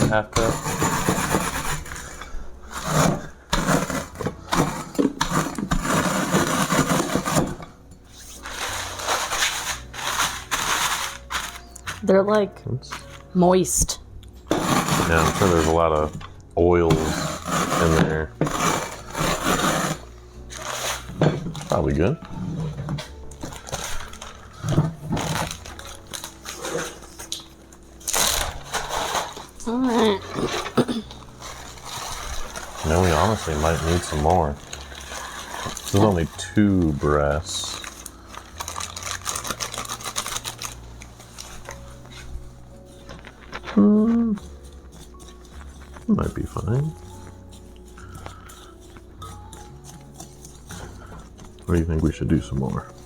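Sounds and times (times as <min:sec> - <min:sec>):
chips crunching and rustling: 0:08.3 - 0:12.0, 0:12.9 - 0:13.3, 0:14.6 - 0:16.1, 0:17.0 - 0:22.4, 0:23.0 - 0:53.0
food mixing in a bowl: 0:14.5 - 0:53.0.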